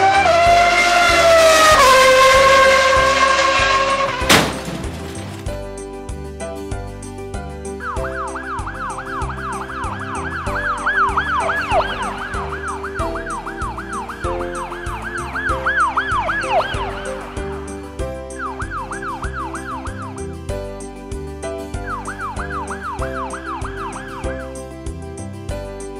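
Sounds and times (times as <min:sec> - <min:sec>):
background music with beat: 0:00.0 - 0:25.9
yelping siren: 0:07.8 - 0:17.2, 0:18.4 - 0:20.1, 0:21.9 - 0:24.4.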